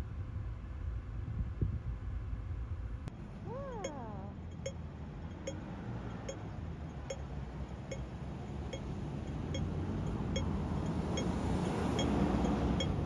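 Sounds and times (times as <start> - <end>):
low traffic rumble: 0.0 - 13.0.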